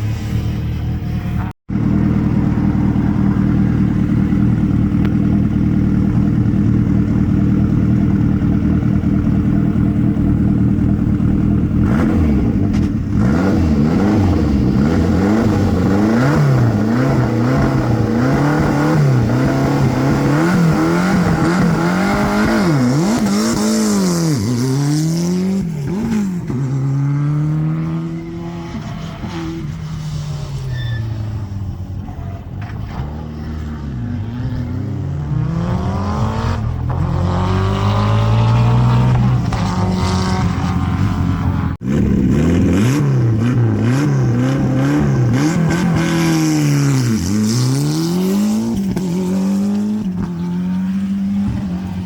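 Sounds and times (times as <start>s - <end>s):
rally car engine accelerating: 11.0s - 52.0s.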